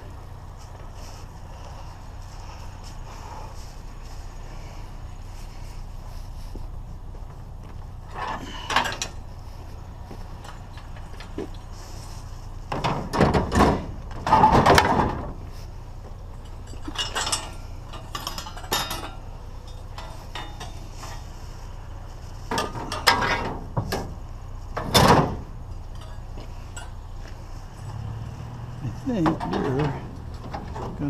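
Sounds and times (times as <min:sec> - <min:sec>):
low steady hum: 0:00.0 - 0:31.0
scrap metal clanking: 0:08.0 - 0:31.0.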